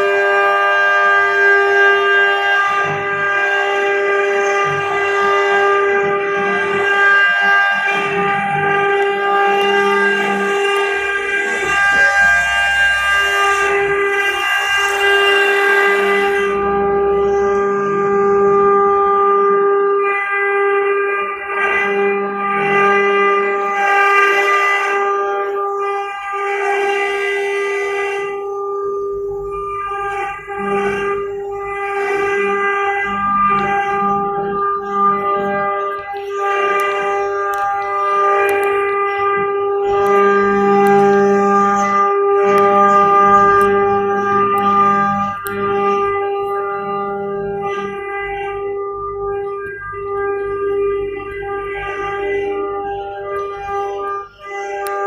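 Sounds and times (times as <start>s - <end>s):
wind instrument music: 0.0s - 55.0s
engraving machine spindle whine: 1.4s - 20.0s.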